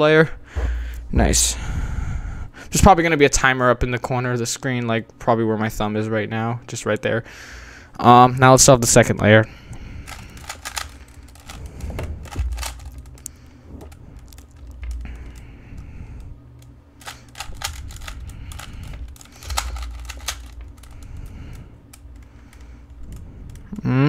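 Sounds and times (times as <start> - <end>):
puzzle cube clicking as twisted: 10.1 - 13.4, 17.0 - 21.2.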